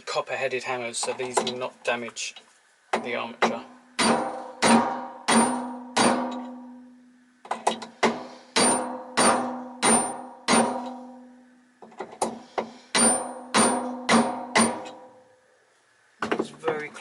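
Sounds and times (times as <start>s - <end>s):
hammer tapping metal: 3.0s - 6.8s, 7.5s - 11.2s, 12.2s - 15.1s.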